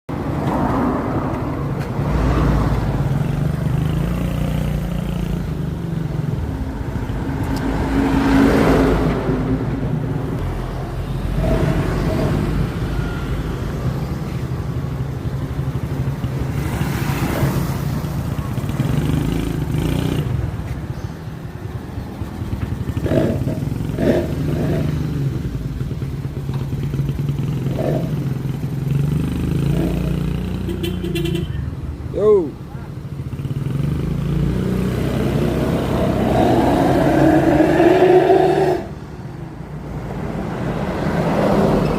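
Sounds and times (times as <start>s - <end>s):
engine revving: 10.4s - 14.0s, 22.8s - 25.6s, 26.8s - 30.8s, 33.4s - 39.0s.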